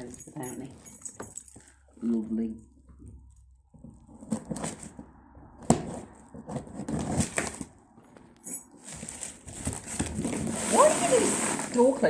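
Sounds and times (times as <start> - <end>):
metallic clink: 0.0 - 1.8
packaging rustling: 6.1 - 12.0.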